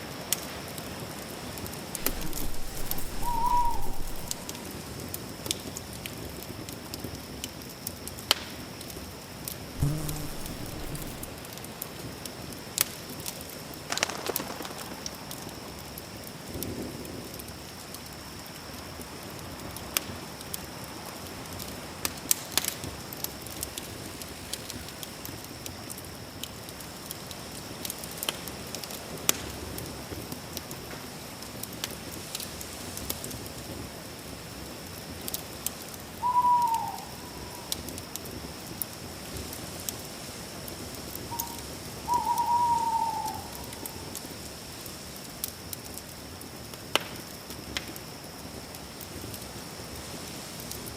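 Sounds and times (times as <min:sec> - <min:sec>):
campfire crackling: 0:01.6 - 0:06.2, 0:09.8 - 0:18.1
animal call dropping in pitch: 0:02.0 - 0:04.5, 0:09.8 - 0:11.3
thin steady high tone: 0:02.0 - 0:04.6.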